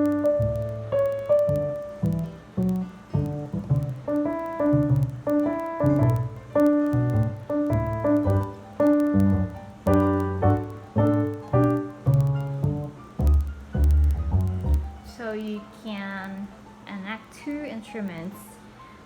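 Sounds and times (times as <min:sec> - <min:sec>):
sustained low bass line: 0:00.0 - 0:15.0
piano notes: 0:00.0 - 0:19.0.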